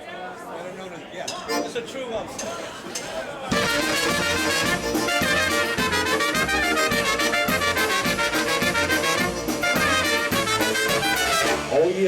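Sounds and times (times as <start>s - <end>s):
brass band playing: 3.5s - 11.9s.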